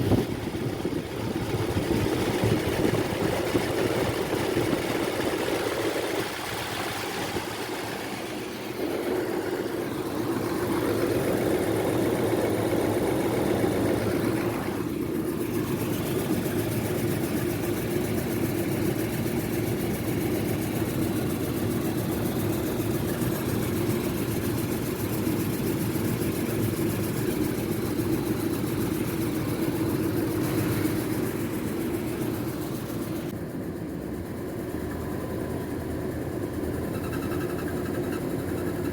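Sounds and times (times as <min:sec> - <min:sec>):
car engine droning: 0:00.0 - 0:38.9.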